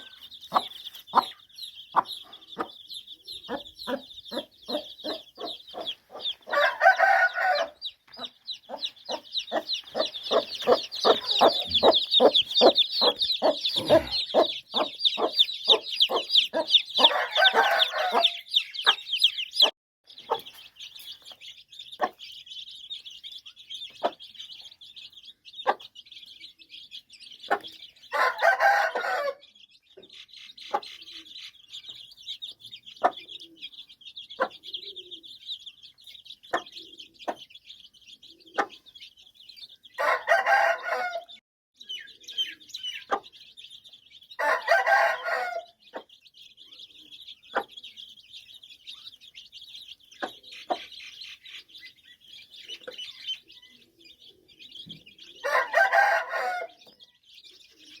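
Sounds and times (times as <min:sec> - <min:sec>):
hen clucking: 0:00.0 - 0:19.7
chicks peeping: 0:00.0 - 0:58.0
rooster crowing: 0:06.5 - 0:07.8, 0:17.0 - 0:18.4, 0:28.1 - 0:29.4, 0:40.0 - 0:41.4, 0:44.4 - 0:45.7, 0:55.4 - 0:56.8.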